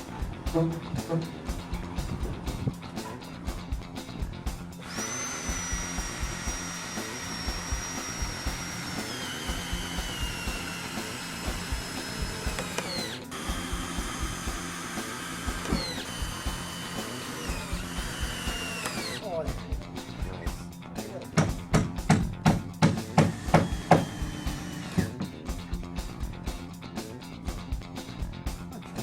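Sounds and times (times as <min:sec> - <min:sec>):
power drill motor whine: 0:04.8 - 0:19.2, 0:23.3 - 0:25.3.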